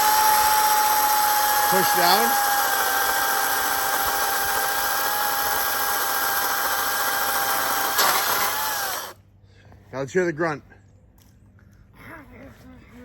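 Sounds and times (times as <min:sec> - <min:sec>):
chainsaw motor whine: 0:00.0 - 0:09.2
chain rasping through wood: 0:00.3 - 0:09.1.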